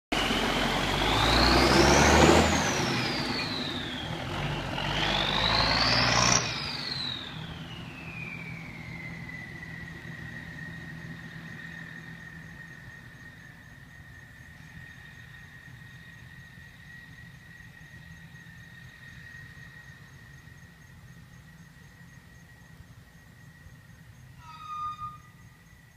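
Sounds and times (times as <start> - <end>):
truck engine revving: 0.1 - 14.4
turbocharger whistling whine: 0.2 - 22.8, 23.4 - 25.9.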